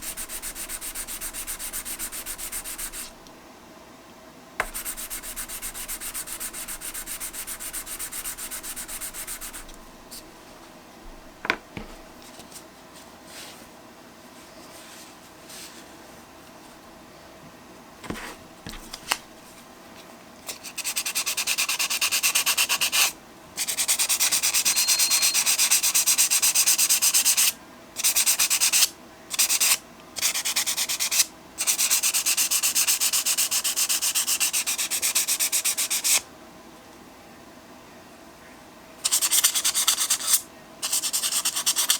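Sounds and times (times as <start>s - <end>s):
metal rubbed on abrasive paper: 0.0s - 3.2s, 4.6s - 9.8s.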